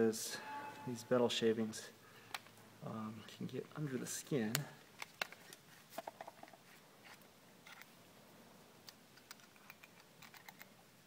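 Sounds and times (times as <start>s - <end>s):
tools and metal parts clicking: 9.2s - 10.7s.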